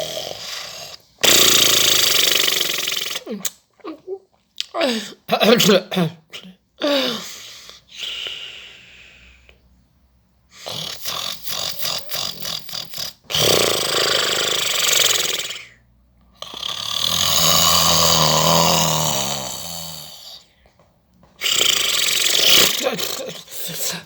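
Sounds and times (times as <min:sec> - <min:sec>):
fluttering rattling snore: 0:00.0 - 0:03.3, 0:10.6 - 0:15.7, 0:16.4 - 0:20.4, 0:21.4 - 0:24.0
long noisy breaths: 0:06.8 - 0:09.7, 0:21.4 - 0:24.0.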